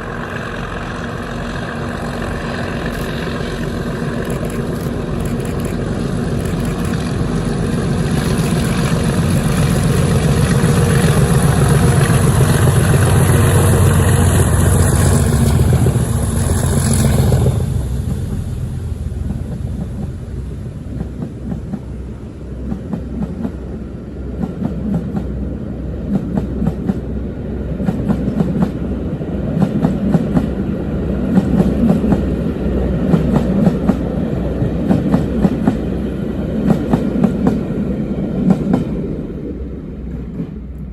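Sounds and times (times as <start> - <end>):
diesel locomotive engines working hard: 0.0 - 40.9
train wheels clacking over rail joints: 2.5 - 17.4.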